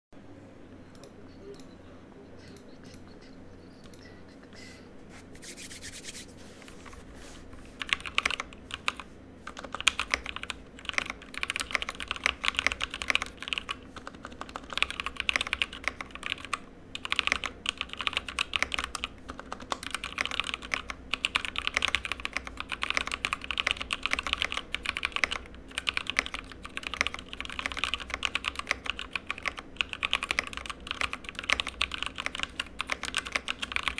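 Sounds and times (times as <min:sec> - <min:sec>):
mechanical keyboard typing: 0:07.8 - 0:33.9.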